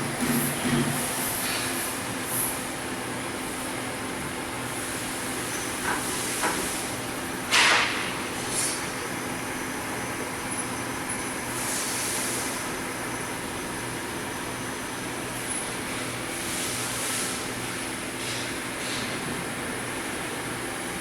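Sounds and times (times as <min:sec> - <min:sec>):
milling machine hum: 0:00.0 - 0:07.2.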